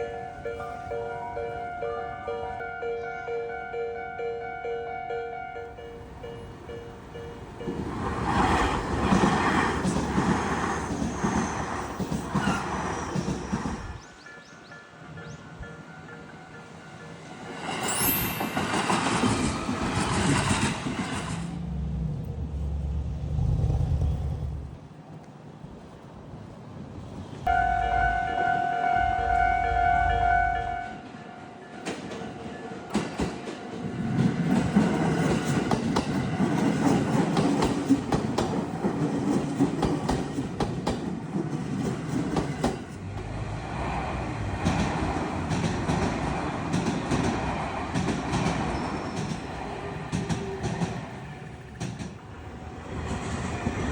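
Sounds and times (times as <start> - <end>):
train wheels on rails: 6.3 - 26.0, 31.0 - 53.9.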